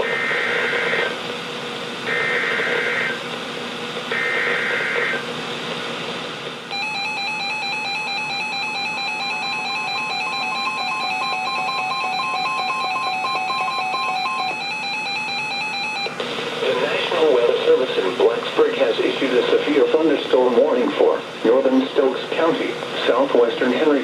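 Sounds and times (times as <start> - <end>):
radio hiss: 0.0 - 6.6, 16.1 - 24.0.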